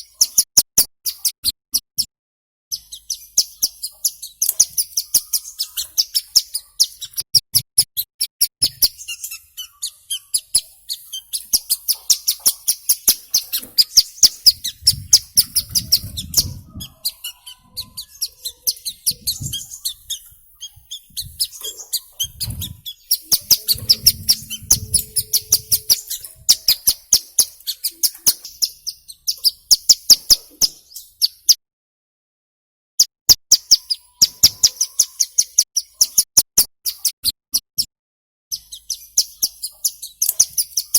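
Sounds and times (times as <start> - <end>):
bird's sharp high chirps: 2.7 - 31.6, 33.5 - 37.2, 38.5 - 40.9
muffled low thumps: 14.5 - 17.0, 19.1 - 19.8, 22.2 - 26.6.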